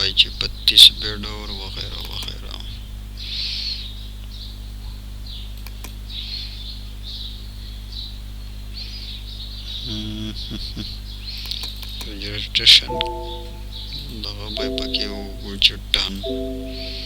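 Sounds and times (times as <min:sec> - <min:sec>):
high-pitched chirping: 0:12.9 - 0:17.0.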